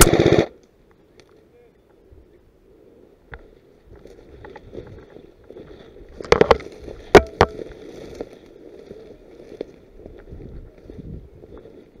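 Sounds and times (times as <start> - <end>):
sharp cracks: 0.0 - 1.3.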